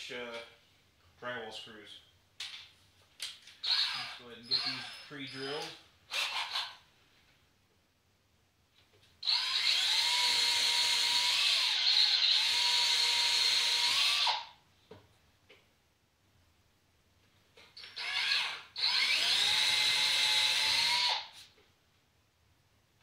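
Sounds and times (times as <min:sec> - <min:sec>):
power drill boring into wood: 0:03.6 - 0:06.8, 0:09.2 - 0:14.5, 0:17.8 - 0:21.4.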